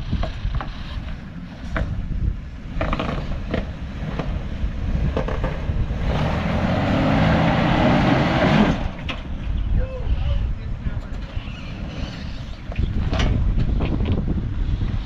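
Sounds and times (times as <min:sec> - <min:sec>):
truck engine rumbling and revving: 0:00.0 - 0:15.0
creaks and knocks on rock: 0:02.8 - 0:03.7.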